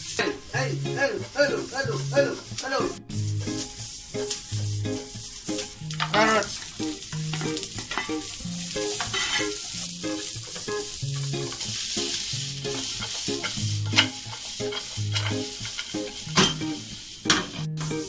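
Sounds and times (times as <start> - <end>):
vegetables sizzling in oil: 0.0 - 18.0
spatula scraping and knocking pan: 2.5 - 18.0.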